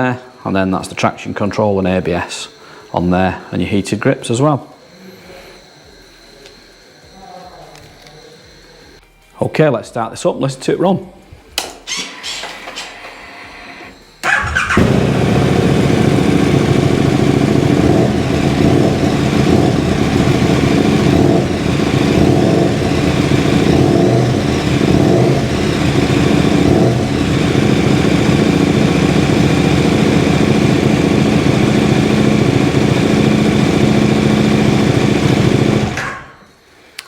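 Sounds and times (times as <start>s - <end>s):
motorcycle engine revving and idling: 14.2s - 36.2s.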